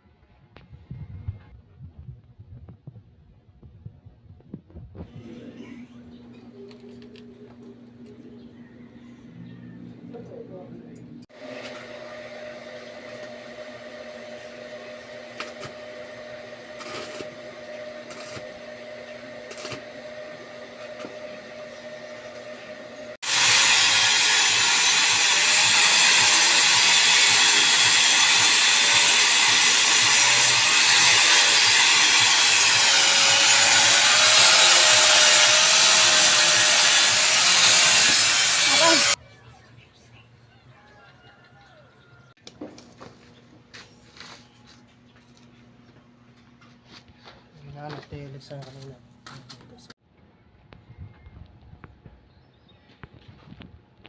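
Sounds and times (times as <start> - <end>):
quiet machine hum: 4.5 - 23.2
power tool on metal: 11.3 - 39.2.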